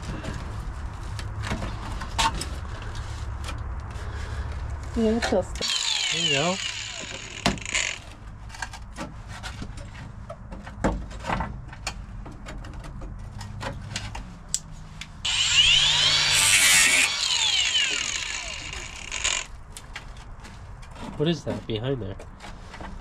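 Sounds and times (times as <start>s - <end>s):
harsh metal scraping with squeal: 15.3s - 19.5s.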